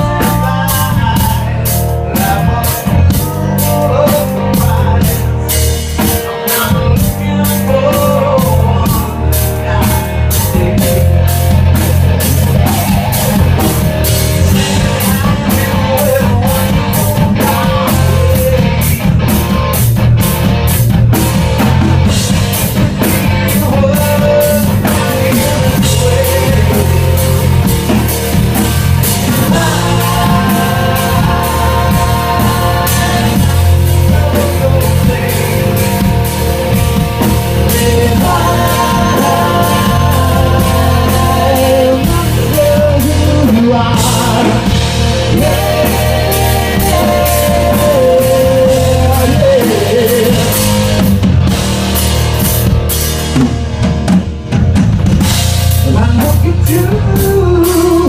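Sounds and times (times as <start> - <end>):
rock band playing live: 0.0 - 58.0.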